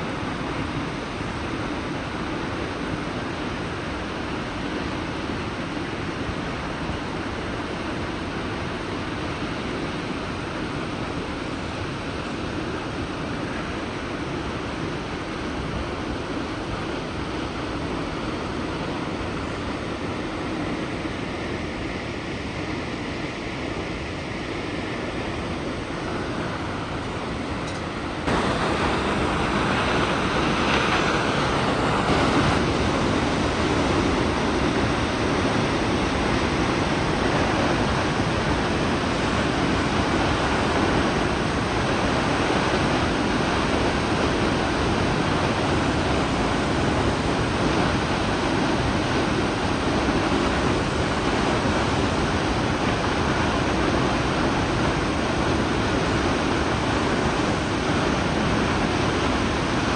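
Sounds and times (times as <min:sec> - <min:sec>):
waterfall roaring: 0:24.7 - 0:59.9.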